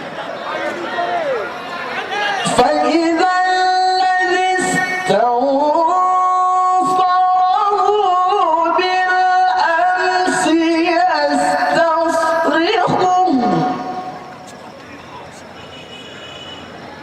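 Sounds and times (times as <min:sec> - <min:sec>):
man reciting melodically: 0:02.4 - 0:15.4.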